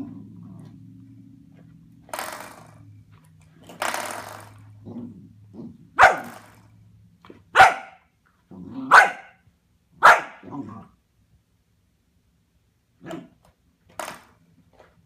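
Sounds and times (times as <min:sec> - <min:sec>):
puppy growling: 0:00.0 - 0:01.2, 0:03.8 - 0:06.6, 0:08.4 - 0:09.2, 0:10.3 - 0:11.0
puppy barking: 0:06.0 - 0:06.5, 0:07.5 - 0:08.1, 0:08.8 - 0:09.4, 0:10.0 - 0:10.6.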